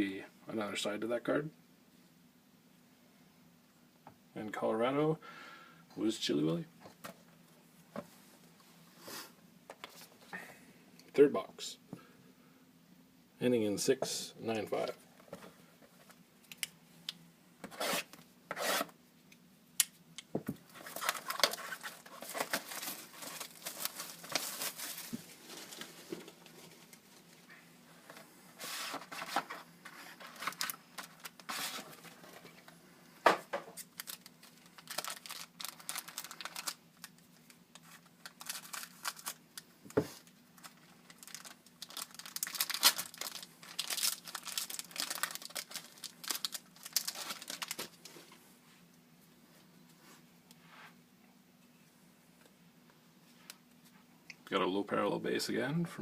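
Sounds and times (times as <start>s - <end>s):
faint steady hum: 0.0s - 56.0s
cardboard and cards sliding: 17.7s - 19.0s, 28.6s - 30.5s, 31.5s - 32.0s
plastic wrap tearing and crinkling: 20.7s - 27.0s, 28.6s - 32.2s, 33.7s - 39.4s, 40.2s - 48.0s.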